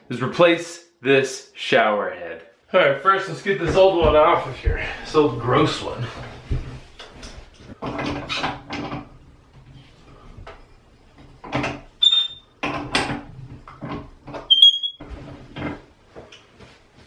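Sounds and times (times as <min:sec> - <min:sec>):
high squeaks: 0:12.0 - 0:12.5, 0:14.5 - 0:15.0.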